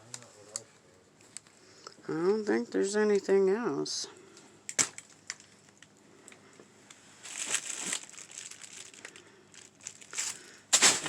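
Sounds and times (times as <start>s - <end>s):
plastic packaging crinkling: 4.7s - 6.0s, 7.2s - 11.0s.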